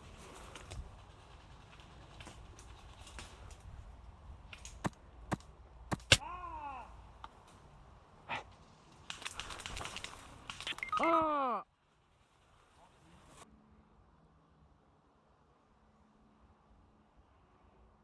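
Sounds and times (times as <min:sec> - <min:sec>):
sharp snaps: 0:08.9 - 0:11.1.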